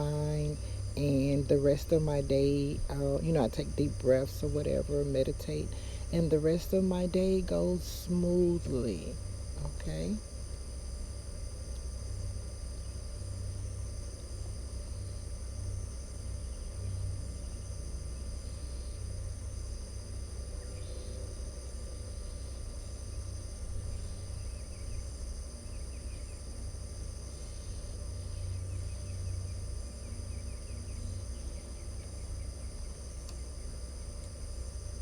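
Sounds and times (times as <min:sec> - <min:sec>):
crickets trilling: 0:00.0 - 0:35.0.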